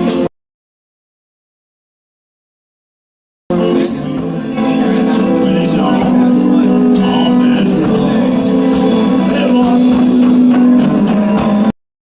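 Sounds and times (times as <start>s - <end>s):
music with singing and beat: 3.5s - 11.7s.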